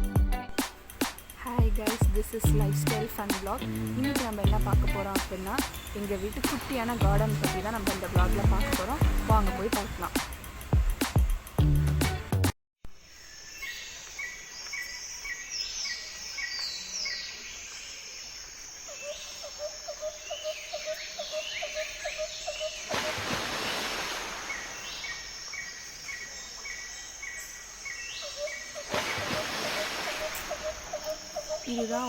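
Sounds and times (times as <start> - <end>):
birds chirping: 0.8 - 11.8, 13.6 - 32.0
high insect drone: 13.0 - 32.0.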